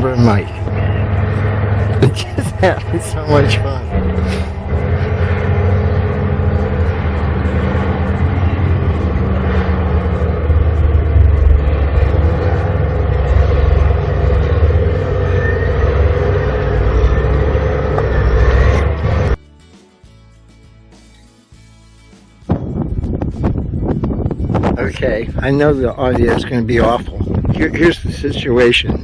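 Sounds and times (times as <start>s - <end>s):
construction machinery engine rumble: 0.0s - 19.4s.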